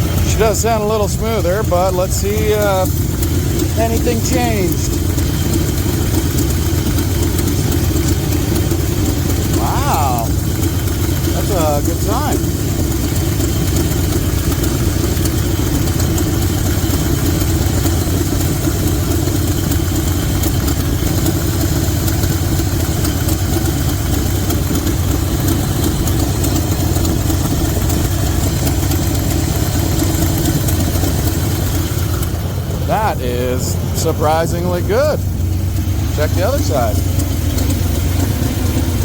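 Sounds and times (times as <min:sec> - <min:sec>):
truck engine idling: 0:00.0 - 0:39.0.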